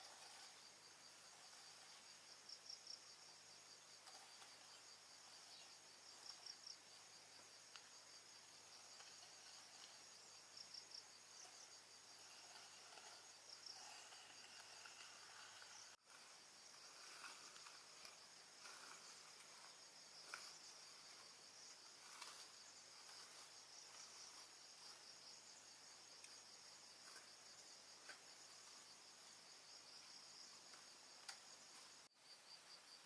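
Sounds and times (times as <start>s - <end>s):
crickets trilling: 0.0s - 33.0s
faint ticks: 7.7s - 8.0s, 30.7s - 31.9s.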